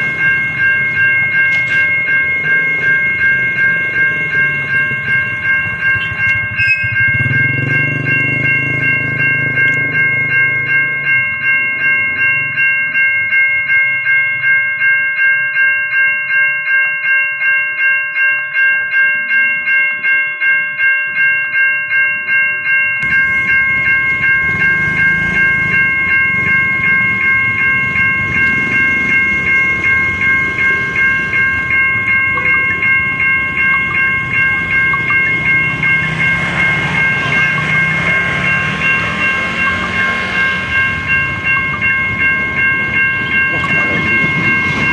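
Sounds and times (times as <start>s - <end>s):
passing train rumble: 0.0s - 13.4s, 23.0s - 44.9s
level crossing alarm bell: 0.0s - 44.9s.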